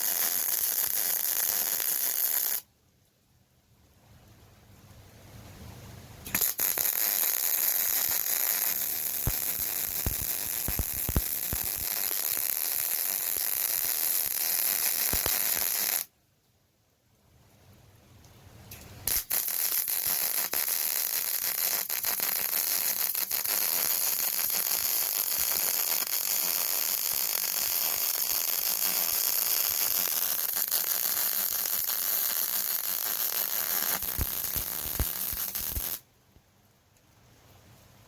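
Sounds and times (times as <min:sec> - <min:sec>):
welding arc crackle and sizzle: 0:00.0 - 0:02.6, 0:06.3 - 0:16.1, 0:19.0 - 0:36.0
welding arc pops: 0:00.0 - 0:02.6, 0:06.2 - 0:16.1, 0:18.7 - 0:36.0.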